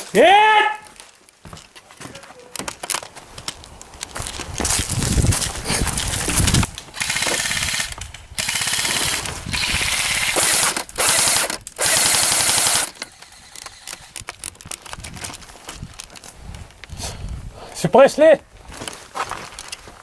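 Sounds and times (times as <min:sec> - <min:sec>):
loud rustling: 0:04.2 - 0:16.4
airsoft rifle rapid-fire bursts: 0:07.0 - 0:14.2.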